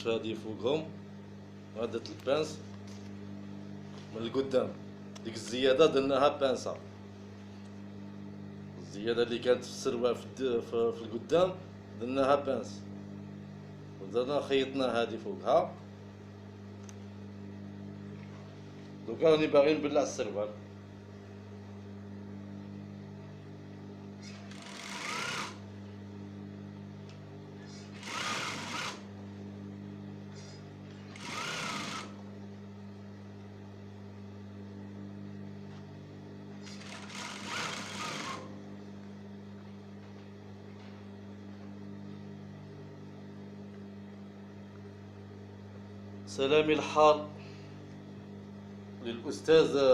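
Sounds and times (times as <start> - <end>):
sewing machine stitching: 24.2 - 25.6, 27.8 - 29.1, 31.0 - 32.2, 36.6 - 38.5.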